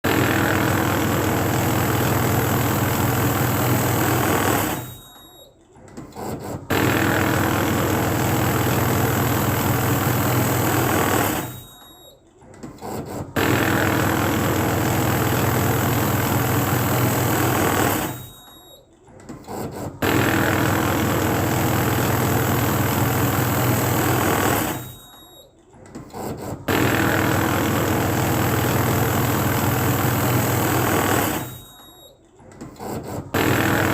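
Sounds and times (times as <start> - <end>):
banknote counting machine whirring: 0.0 - 5.4, 6.1 - 12.0, 12.8 - 18.7, 19.4 - 25.3, 26.1 - 32.0, 32.6 - 33.9
small machine clicks: 16.6 - 27.2.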